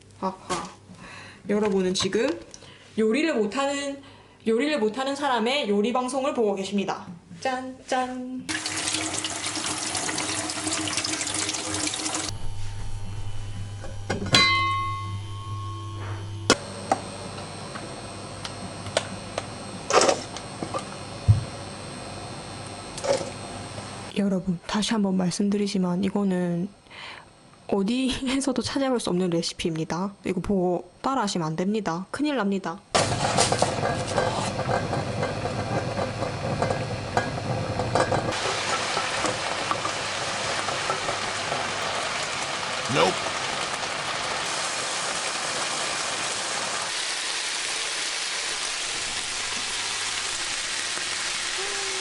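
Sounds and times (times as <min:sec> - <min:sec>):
meat sizzling in a pan: 0:08.5 - 0:12.3, 0:38.3 - 0:52.0
low hum: 0:12.2 - 0:24.1
metal pot struck ringing: 0:12.3 - 0:16.6.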